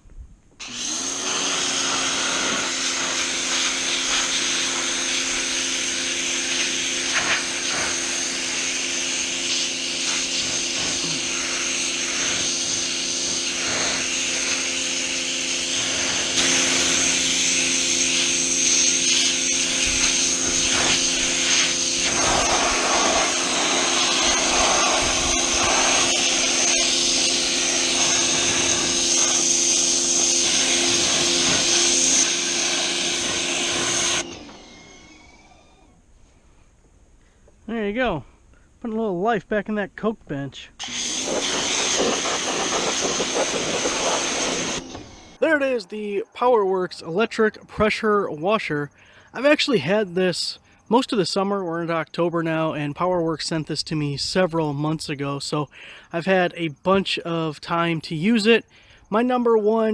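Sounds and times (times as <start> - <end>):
pressure washer motor humming: 0.6 - 35.8, 40.8 - 51.4
high-pressure spray hissing: 1.2 - 34.3, 40.9 - 46.9.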